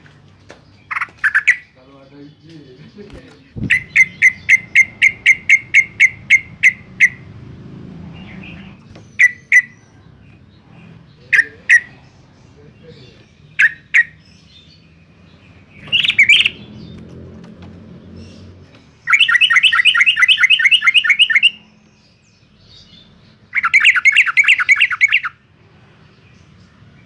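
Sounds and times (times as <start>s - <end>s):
bird calling sharp notes: 0.9s - 1.8s, 3.2s - 7.4s, 8.2s - 10.0s, 11.2s - 12.1s, 13.0s - 14.4s, 15.7s - 17.0s, 18.2s - 21.9s, 23.5s - 25.4s.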